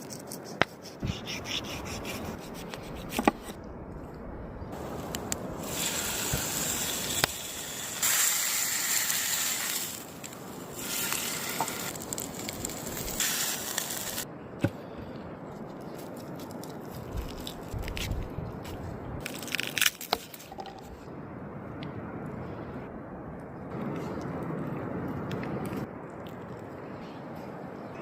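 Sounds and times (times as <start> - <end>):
meat sizzling over fire: 4.8 - 14.2.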